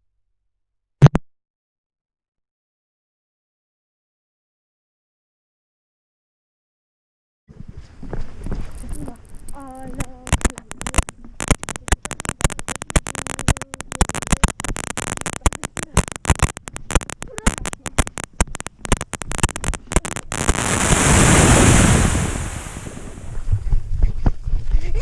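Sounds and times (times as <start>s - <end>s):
crackling and popping: 8.1s - 24.4s
rush of noise: 14.5s - 23.7s.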